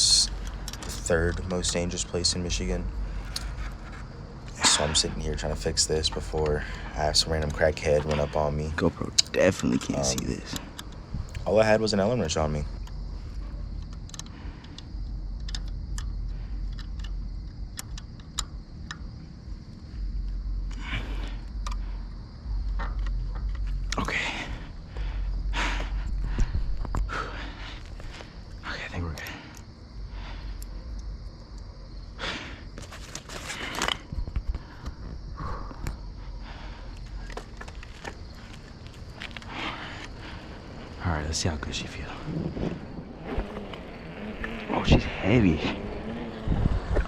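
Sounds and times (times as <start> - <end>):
rustling and scraping: 0.0 - 8.9, 32.3 - 41.0, 41.6 - 44.0
rustling: 32.6 - 35.2.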